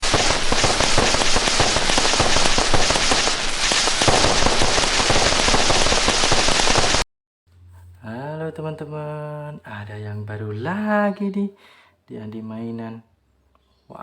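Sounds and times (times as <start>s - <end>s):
dense crackle of rapid pops: 0.0s - 7.0s.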